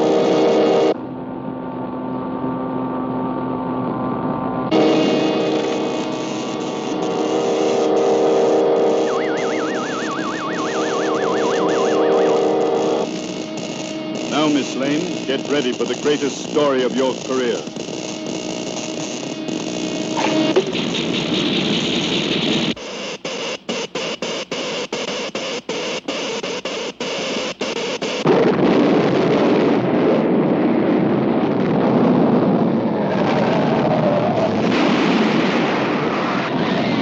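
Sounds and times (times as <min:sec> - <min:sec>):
loud hissing crackle: 0:04.7 - 0:37.0
heavy rumble: 0:28.2 - 0:37.0.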